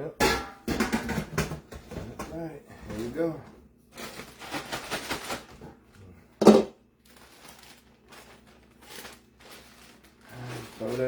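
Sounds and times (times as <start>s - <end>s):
kitchen rustling and clattering: 0.0s - 11.0s.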